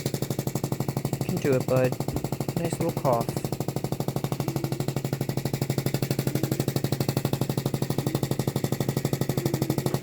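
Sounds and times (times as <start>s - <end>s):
percussion device rapid tapping rattle: 0.0s - 10.0s
steady low hum: 0.0s - 10.0s.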